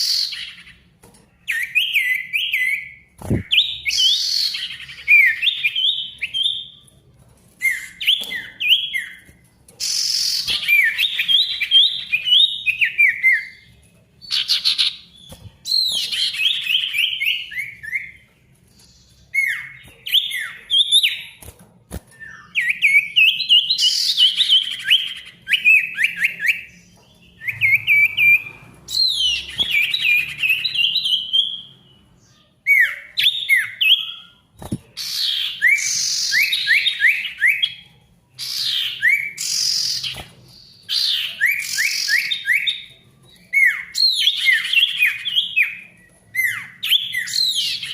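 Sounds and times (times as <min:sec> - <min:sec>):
songbird singing whistled chirps: 0:00.0 - 0:07.0, 0:07.6 - 0:47.9.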